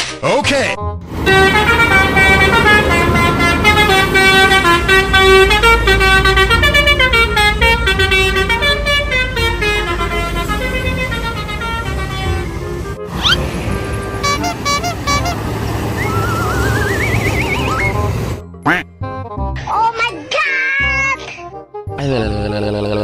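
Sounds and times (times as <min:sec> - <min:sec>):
low engine rumble: 0:01.0 - 0:18.4
multi-tone bus horn melody: 0:01.0 - 0:19.3.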